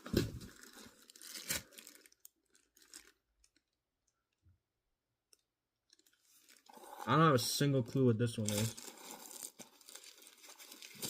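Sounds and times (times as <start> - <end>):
packaging crinkling: 0.0 - 3.8, 5.9 - 6.9, 8.3 - 11.0.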